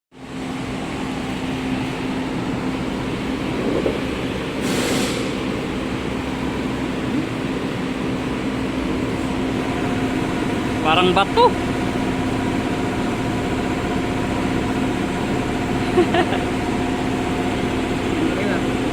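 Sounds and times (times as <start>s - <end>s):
car engine idling with knocking: 0.2s - 18.9s
brief hiss: 4.6s - 5.5s.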